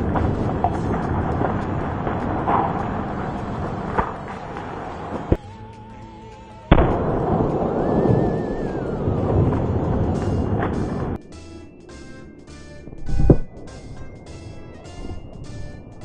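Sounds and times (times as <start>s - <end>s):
sharp firework bangs: 0.0s - 5.4s, 6.7s - 11.2s
warbling musical tone: 0.0s - 5.4s, 6.7s - 16.0s
fireworks exploding and crackling: 0.0s - 5.5s, 6.7s - 11.3s.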